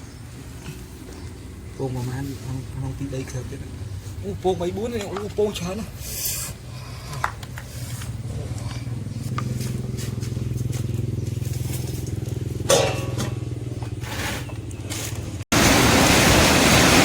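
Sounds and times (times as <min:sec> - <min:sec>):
small engine running: 0:07.7 - 0:12.7.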